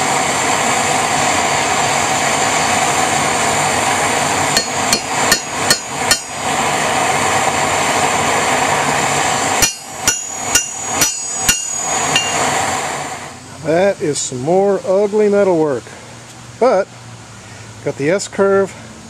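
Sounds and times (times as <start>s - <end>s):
steady rushing noise: 0.0s - 14.5s
hammer striking metal on anvil: 4.5s - 6.4s, 9.6s - 12.6s.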